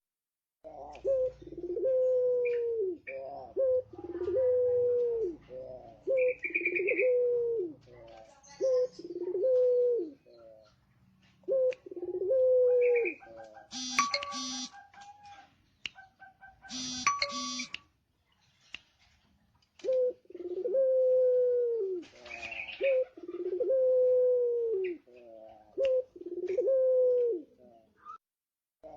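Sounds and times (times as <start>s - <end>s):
dove cooing: 0.7s - 17.7s, 19.8s - 28.2s
faint high chirps: 13.7s - 14.8s, 16.7s - 18.6s
short electronic chime: 16.8s - 17.7s.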